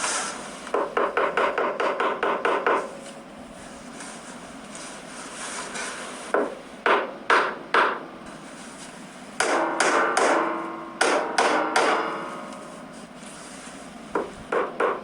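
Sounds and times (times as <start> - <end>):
hammer striking pencils: 0.7 - 2.9, 9.4 - 12.2, 14.2 - 15.0.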